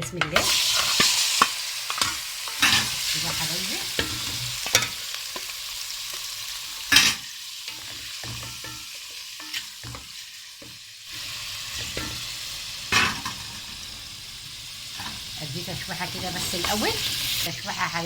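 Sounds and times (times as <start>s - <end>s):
food sizzling in hot oil: 0.1s - 18.0s.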